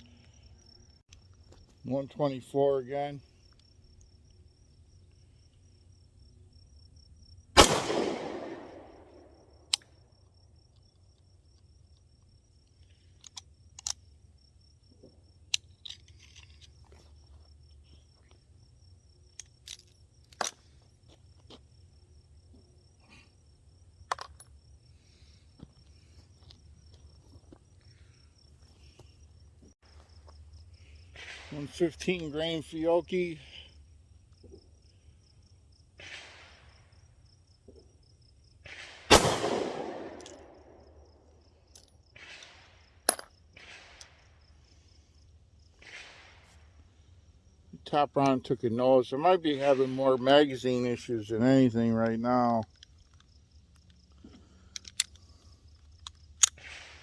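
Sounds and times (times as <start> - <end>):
crickets chirping: 0.0 - 57.0
pistol shot: 7.6 - 9.3, 38.7 - 40.8.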